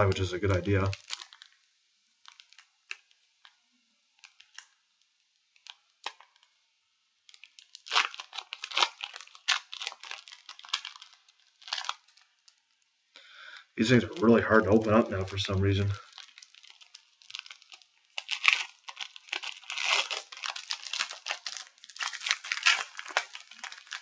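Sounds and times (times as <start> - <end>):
foil pack tearing open: 0.0 - 1.6, 7.3 - 12.6, 15.8 - 24.0
foil wrapper crinkling: 0.0 - 6.5, 7.2 - 12.9, 13.5 - 24.0.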